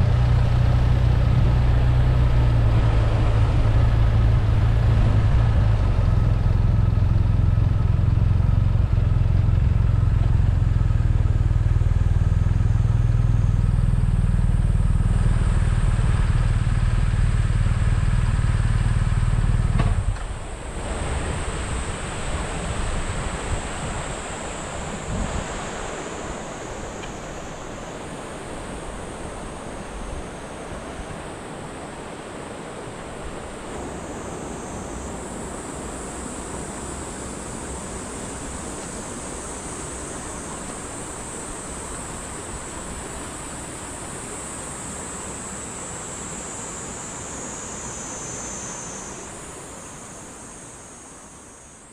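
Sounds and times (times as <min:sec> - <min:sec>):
motorcycle engine running: 0:00.0 - 0:23.6
rushing waterfall and stream: 0:20.1 - 0:51.6.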